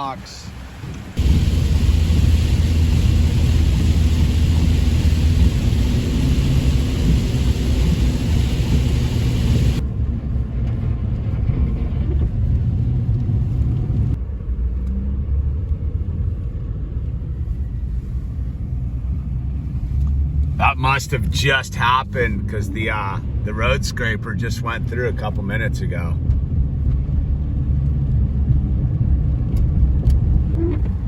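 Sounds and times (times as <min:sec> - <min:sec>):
car engine and tyres rumbling: 0:00.0 - 0:31.0.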